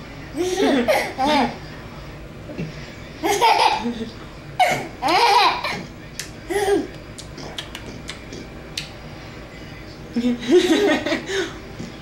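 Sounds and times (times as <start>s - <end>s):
baby laughing: 0.4s - 1.6s, 3.2s - 4.0s, 4.6s - 5.8s.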